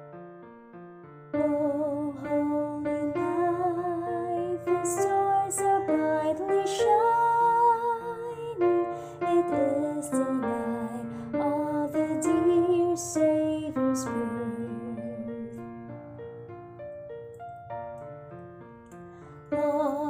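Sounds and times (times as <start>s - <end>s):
piano accompaniment: 0.0s - 20.0s
woman singing: 1.4s - 15.9s, 19.5s - 20.0s.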